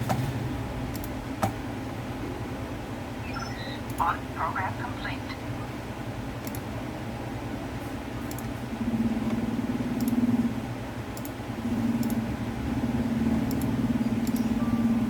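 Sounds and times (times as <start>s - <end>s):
low motor hum: 3.2s - 15.0s.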